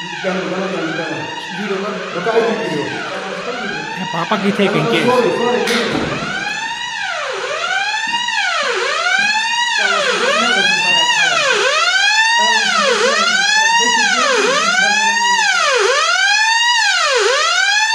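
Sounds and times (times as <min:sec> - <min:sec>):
smoke detector wailing alarm: 0:00.0 - 0:17.9.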